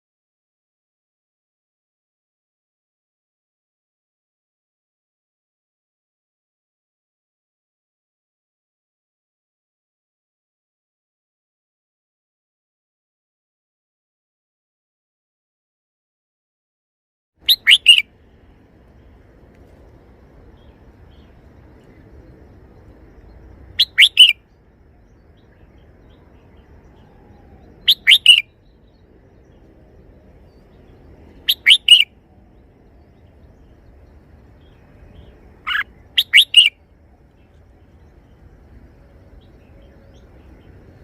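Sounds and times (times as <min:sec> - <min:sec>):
bird singing whistled notes: 0:17.4 - 0:18.1, 0:20.4 - 0:41.0
faint low hum: 0:17.4 - 0:41.0.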